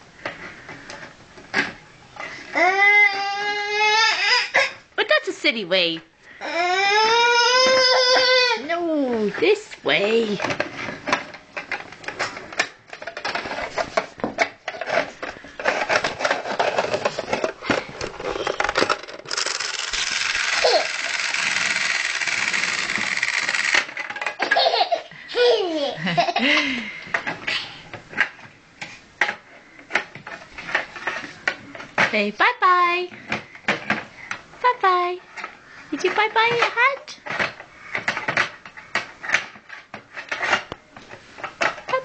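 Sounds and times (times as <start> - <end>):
baby laughing and squealing: 20.6 - 21.0
small clicks and knocks: 35.4 - 42.0.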